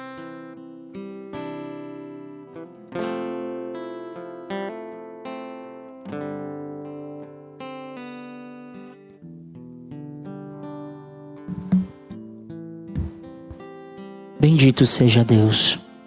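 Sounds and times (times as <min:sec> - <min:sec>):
acoustic guitar strumming chords: 0:11.5 - 0:12.0, 0:13.0 - 0:13.6.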